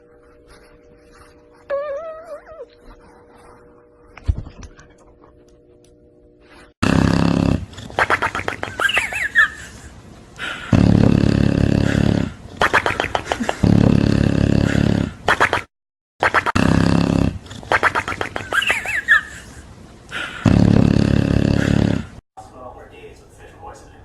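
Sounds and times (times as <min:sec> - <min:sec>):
animal giving harsh calls: 0:07.7 - 0:09.8, 0:17.6 - 0:19.6.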